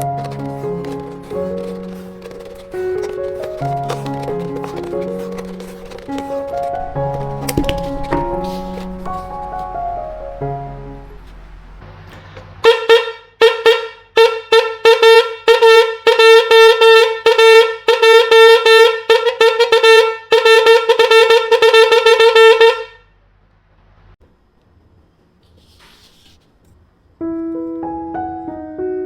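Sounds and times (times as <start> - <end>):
horn tooting: 0.0 - 23.1.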